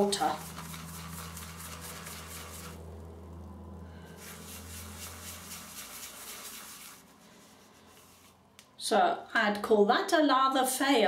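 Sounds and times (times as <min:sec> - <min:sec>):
shaving brush swishing in bowl: 0:00.0 - 0:03.0, 0:04.0 - 0:08.4
low steady hum: 0:00.0 - 0:10.5.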